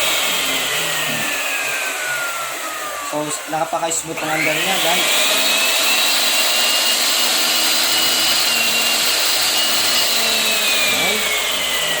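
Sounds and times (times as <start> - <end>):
miter saw motor whining: 0.0 - 12.0.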